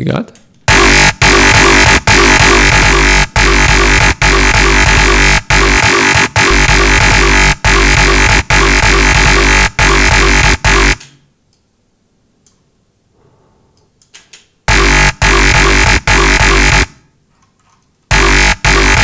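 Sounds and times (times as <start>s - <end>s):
distorted synth bass notes: 0.7s - 11.0s, 14.7s - 17.0s, 18.1s - 19.0s.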